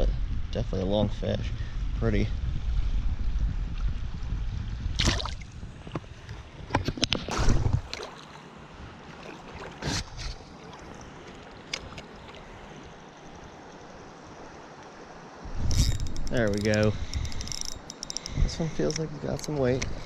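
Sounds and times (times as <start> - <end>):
wind buffeting microphone: 0.0 - 8.0, 15.4 - 20.0
short sharp clicks or splashes: 5.0 - 5.4
creek rushing: 7.2 - 20.0.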